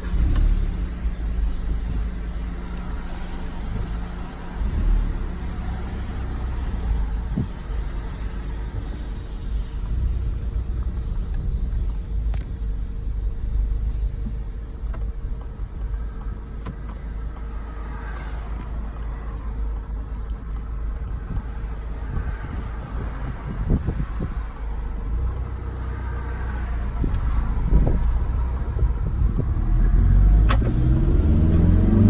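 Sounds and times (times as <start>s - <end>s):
car engine running: 0.0s - 32.0s
faint clicks: 14.2s - 30.7s.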